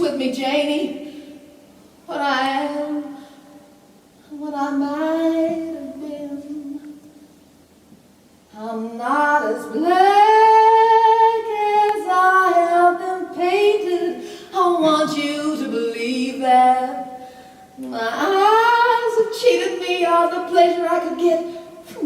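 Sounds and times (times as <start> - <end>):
high solo voice singing: 8.5 - 22.0.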